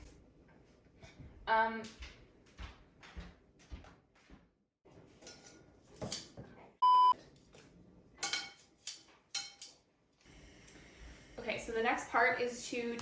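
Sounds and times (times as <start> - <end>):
kitchenware knocks and clatters: 4.9 - 6.7.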